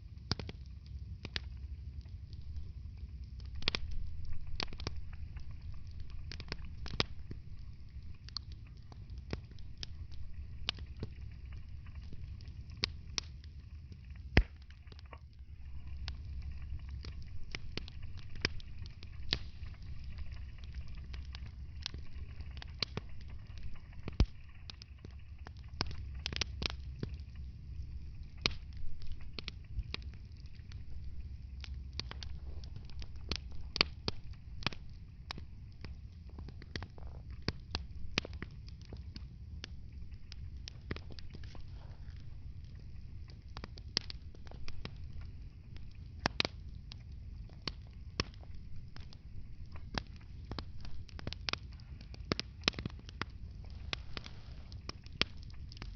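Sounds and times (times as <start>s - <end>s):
low rumble of flames: 0.0s - 55.9s
wood fire crackling and popping: 0.0s - 55.9s.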